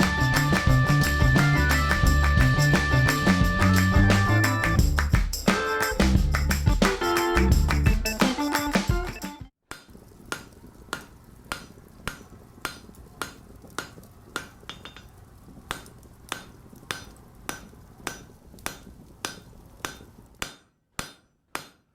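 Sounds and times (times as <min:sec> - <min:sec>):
sharp rhythmic taps: 0:00.0 - 0:09.5.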